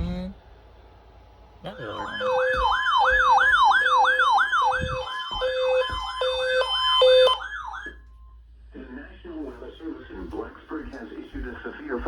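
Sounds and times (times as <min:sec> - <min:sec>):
electronic siren yelping: 0:01.6 - 0:08.0
steady beep: 0:01.7 - 0:03.6.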